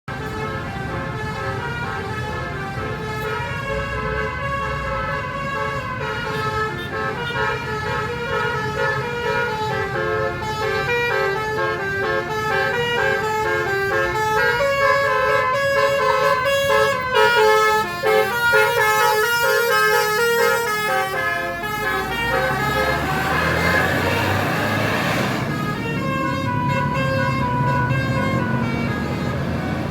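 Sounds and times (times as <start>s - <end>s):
multi-trumpet bus horn melody: 0.1s - 29.9s.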